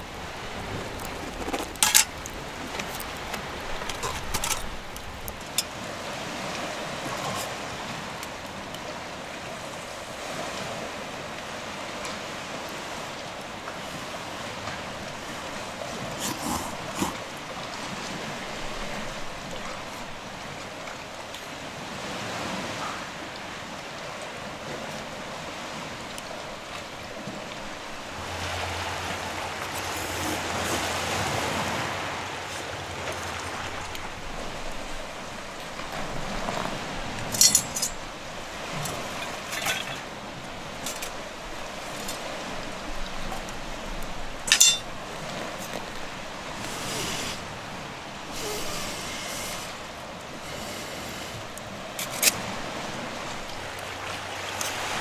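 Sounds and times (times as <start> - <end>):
ocean surf: 0.0 - 55.0
metallic clinks of cookware: 37.3 - 38.0, 44.5 - 44.9.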